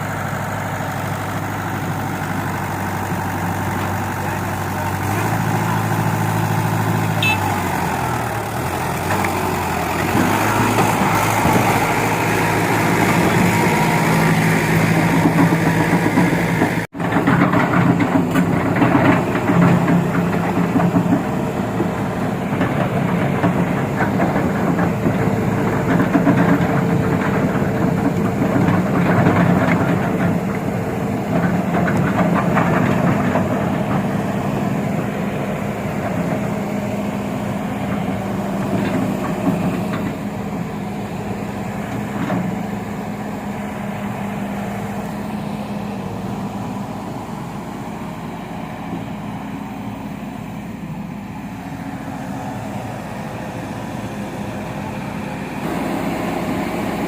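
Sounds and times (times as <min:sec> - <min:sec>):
excavator diesel engine running: 0:00.0 - 0:57.0
machine rattling and clanking: 0:08.2 - 0:36.7.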